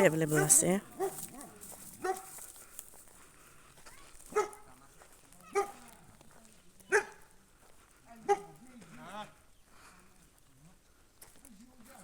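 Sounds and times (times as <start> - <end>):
dog barking: 0.3 - 2.4, 4.3 - 4.7, 5.5 - 5.9, 6.9 - 7.3, 8.2 - 8.6.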